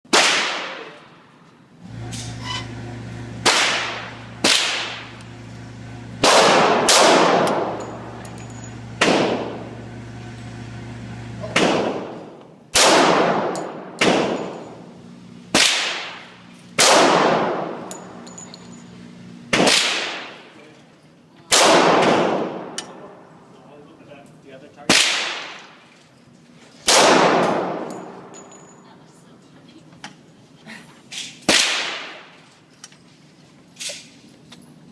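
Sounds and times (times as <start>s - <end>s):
echoing gunshots: 0.1s - 1.0s, 3.4s - 5.1s, 6.2s - 7.8s, 9.0s - 9.7s, 11.4s - 14.6s, 15.5s - 17.8s, 19.5s - 20.4s, 21.5s - 22.7s, 26.9s - 27.9s, 31.5s - 32.3s.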